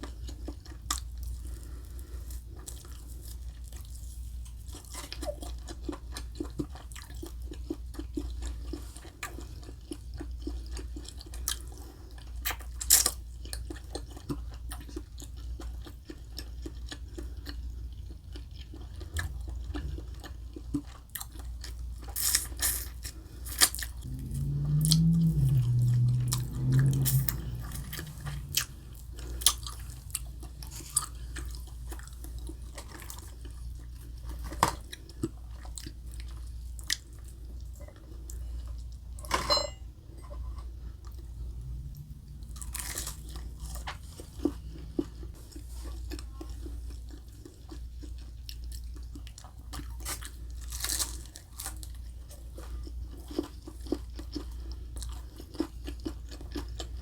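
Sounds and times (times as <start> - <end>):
crunchy chewing: 0.0 - 39.2, 40.6 - 57.0
wet mouth sounds: 23.7 - 32.7.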